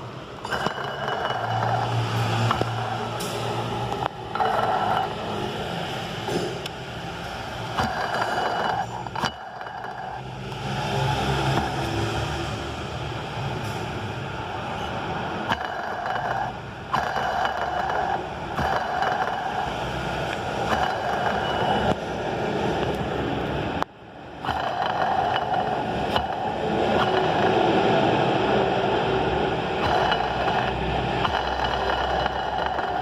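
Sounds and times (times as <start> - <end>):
street traffic: 0.0 - 33.0
engine turned over by hand: 0.4 - 5.2, 7.7 - 10.2, 15.4 - 22.0, 24.4 - 27.8, 29.8 - 33.0
rough rolling scrape: 0.4 - 5.6, 7.5 - 12.0, 15.4 - 22.0, 24.4 - 28.8, 29.8 - 33.0.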